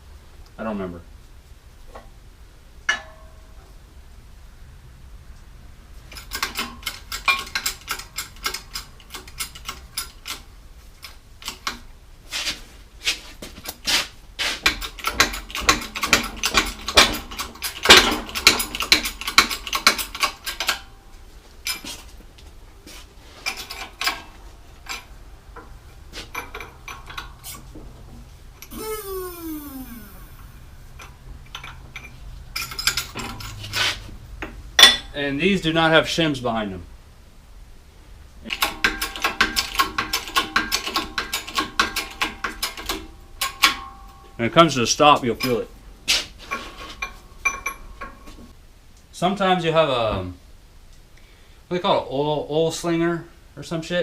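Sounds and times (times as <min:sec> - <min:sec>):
metal tools clinking: 0:31.0 - 0:33.8.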